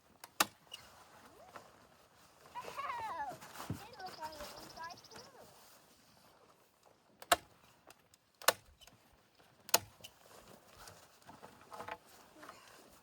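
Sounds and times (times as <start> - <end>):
canvas rustling: 0.6 - 6.8, 9.4 - 13.0.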